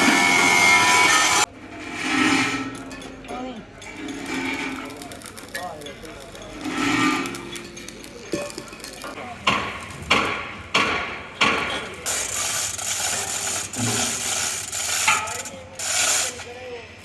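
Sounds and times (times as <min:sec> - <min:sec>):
rasping mechanical noise: 0:00.0 - 0:03.1, 0:03.8 - 0:08.4, 0:09.4 - 0:17.0
metal scraping strokes: 0:00.0 - 0:05.4, 0:06.1 - 0:08.4, 0:11.4 - 0:16.8.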